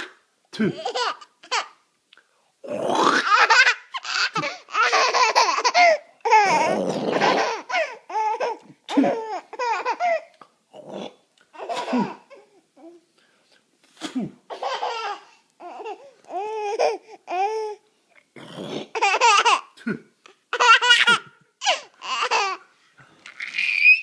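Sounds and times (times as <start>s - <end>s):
baby laughing: 0.0s - 1.8s, 3.1s - 10.4s, 11.5s - 12.5s, 14.5s - 17.8s, 18.8s - 19.8s, 20.5s - 24.0s
man clearing throat and hawking: 11.8s - 12.3s, 14.0s - 14.5s.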